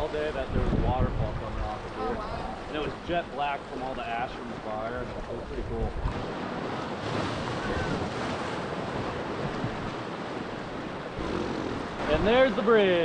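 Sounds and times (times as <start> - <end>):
wind buffeting microphone: 0.0 - 3.6, 4.2 - 13.0
river water rushing: 1.5 - 13.0.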